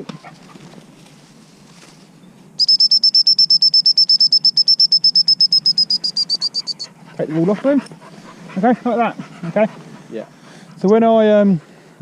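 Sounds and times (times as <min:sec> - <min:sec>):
dog whistle short high pips: 0:02.6 - 0:06.9.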